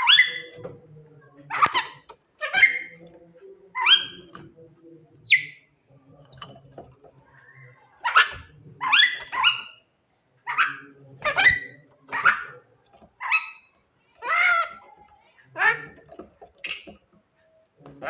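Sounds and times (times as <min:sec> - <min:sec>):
myna bird calling: 0:00.0 - 0:00.6, 0:03.7 - 0:04.5, 0:05.2 - 0:05.7, 0:07.2 - 0:17.1.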